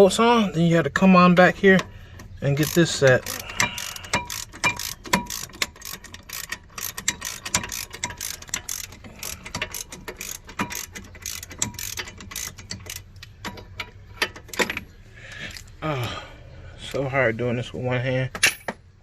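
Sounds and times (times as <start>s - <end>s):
ratchet wrench clicking: 2.5s - 14.8s.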